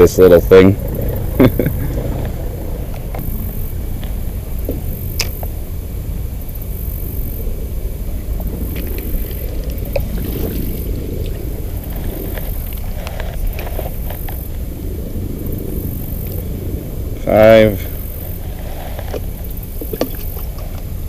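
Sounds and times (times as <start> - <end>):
faint ticks: 1.5 - 5.6
flowing river water: 7.2 - 14.6, 17.4 - 21.0.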